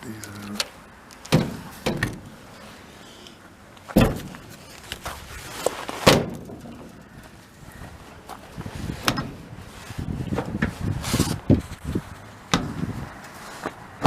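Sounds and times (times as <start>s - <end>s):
metal door latch clunks and knocks: 1.3s - 2.3s, 4.0s - 4.4s.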